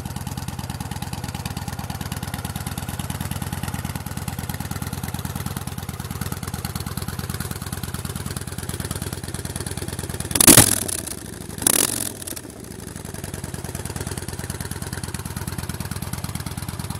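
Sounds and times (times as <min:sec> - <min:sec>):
motorcycle engine idling: 0:00.0 - 0:16.9
motorcycle engine revving: 0:09.6 - 0:15.7.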